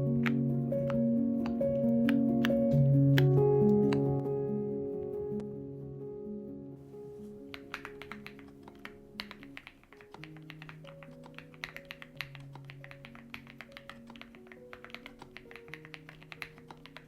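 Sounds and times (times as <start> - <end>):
soft background music: 0.0 - 17.0
mechanical keyboard key clacks: 7.5 - 17.0.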